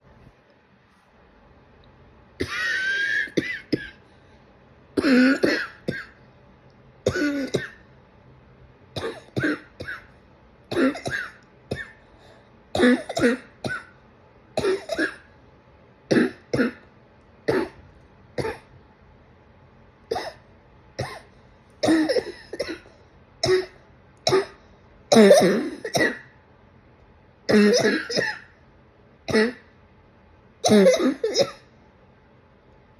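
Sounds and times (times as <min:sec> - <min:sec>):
person coughing: 0:02.4 - 0:04.0, 0:05.0 - 0:06.2, 0:07.1 - 0:07.8, 0:09.0 - 0:10.1, 0:10.7 - 0:12.0, 0:12.8 - 0:13.9, 0:14.6 - 0:15.3, 0:16.1 - 0:16.9, 0:17.5 - 0:17.8, 0:18.4 - 0:18.7, 0:20.1 - 0:20.4, 0:21.0 - 0:26.3, 0:27.5 - 0:28.6, 0:29.3 - 0:29.7, 0:30.6 - 0:31.7.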